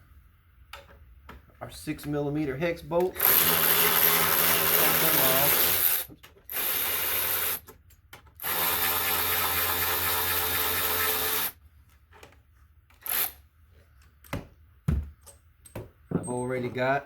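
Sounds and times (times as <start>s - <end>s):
power drill spinning: 3.1s - 7.7s, 8.4s - 11.6s, 12.9s - 13.4s.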